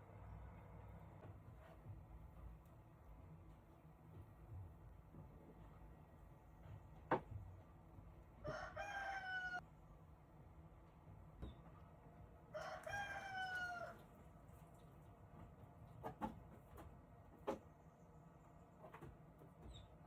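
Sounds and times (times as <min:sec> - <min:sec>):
rooster crowing: 0:08.4 - 0:09.6, 0:12.5 - 0:14.0.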